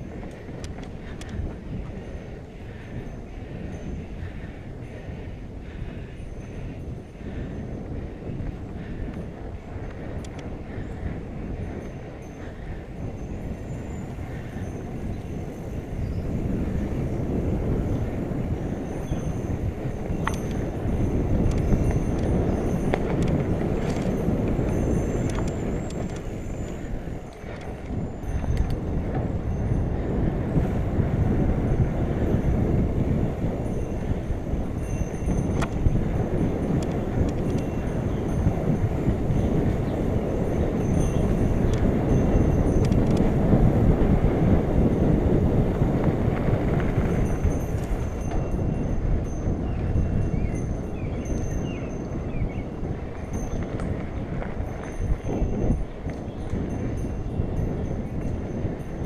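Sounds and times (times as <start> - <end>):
bike clicks and rattles: 0.0 - 59.0
wind rushing over microphone: 0.0 - 59.0
faint clicks: 0.2 - 1.4, 9.8 - 10.5, 22.9 - 29.2, 42.7 - 43.3.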